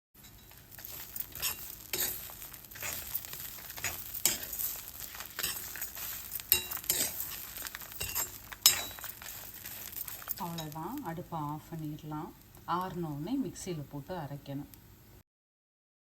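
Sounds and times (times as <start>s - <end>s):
spoon scraping iron pan: 0.2s - 10.8s
light sizzle of oil: 0.2s - 15.2s.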